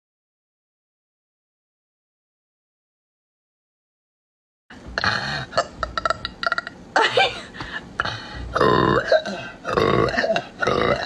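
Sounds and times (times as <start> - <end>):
woman belching: 5.0 - 6.8, 8.5 - 11.0.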